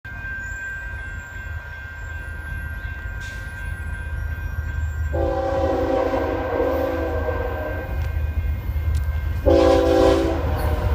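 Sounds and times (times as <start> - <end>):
diesel locomotive rumbling: 0.1 - 10.9
locomotive horn chord: 5.2 - 8.1, 9.4 - 10.9.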